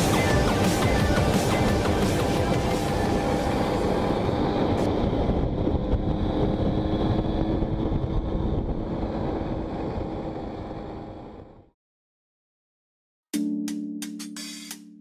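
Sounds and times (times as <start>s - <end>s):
wind noise on microphone: 0.0s - 11.7s.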